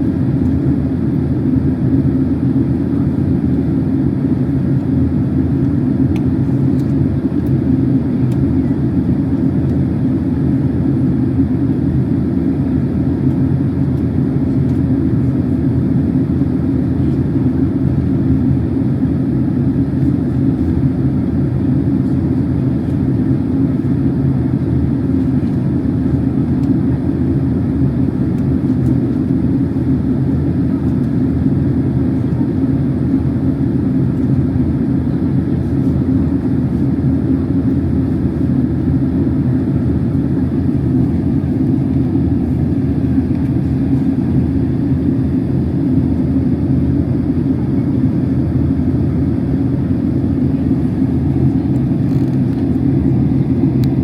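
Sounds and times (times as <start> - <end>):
airliner engines rumbling in cabin: 0.0 - 54.0.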